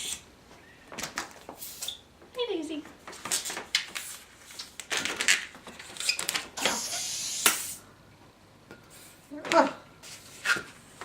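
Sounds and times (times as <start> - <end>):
long air hiss: 0.0 - 0.3, 1.5 - 2.0, 6.6 - 8.0
hand pump air rushes: 6.6 - 7.8.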